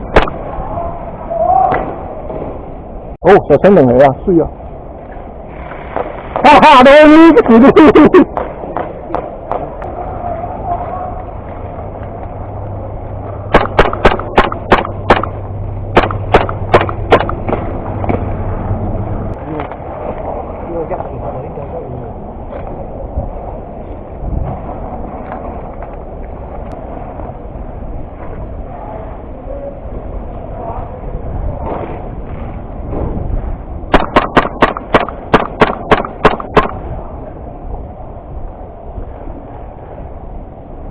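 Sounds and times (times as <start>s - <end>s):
airsoft gun shots: 0.1s - 0.4s, 13.5s - 17.7s, 33.9s - 36.8s
steady low hum: 7.7s - 40.9s
low rumble: 9.3s - 40.9s.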